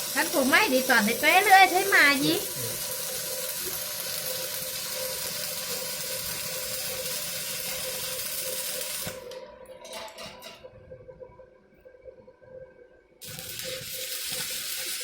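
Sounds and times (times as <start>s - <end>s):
welding arc hissing: 0.0s - 9.4s, 13.2s - 15.0s.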